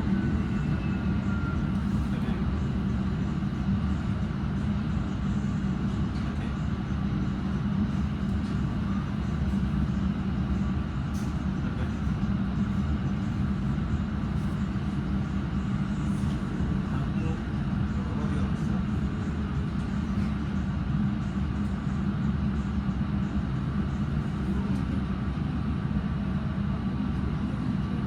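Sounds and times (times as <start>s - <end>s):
train rumbling: 0.0s - 28.0s.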